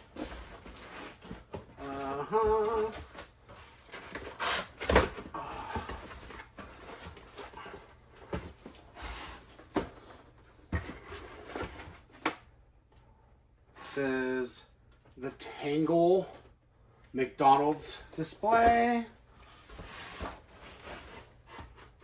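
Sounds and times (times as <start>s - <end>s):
cardboard rustling: 0.0s - 12.2s, 18.3s - 22.0s.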